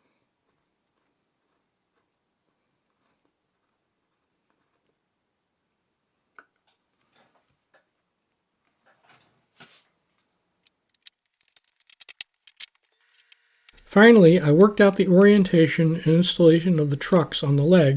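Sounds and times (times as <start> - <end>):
small parts and tools clicking: 10.6 - 14.0.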